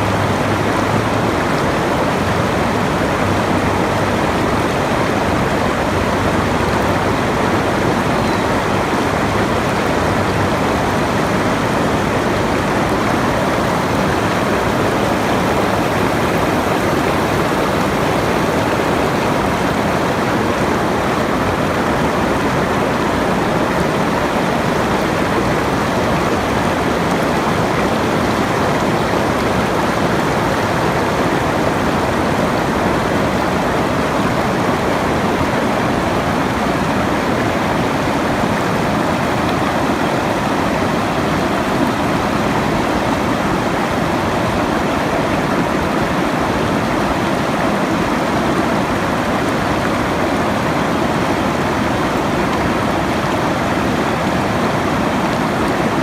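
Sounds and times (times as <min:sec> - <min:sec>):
running water rushing: 0:00.0 - 0:56.0.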